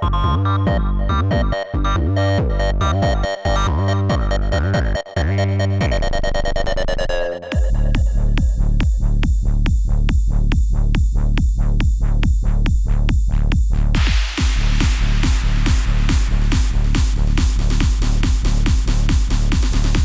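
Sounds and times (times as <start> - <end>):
fast-wobbling synthesizer tone: 0.0 - 8.6
pulsing plucked synth notes: 0.0 - 8.6
deep synth bass: 0.0 - 20.0.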